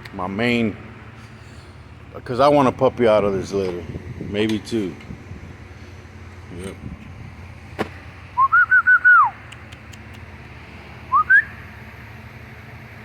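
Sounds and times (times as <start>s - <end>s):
whistled notes: 8.4s - 9.4s, 11.1s - 11.6s.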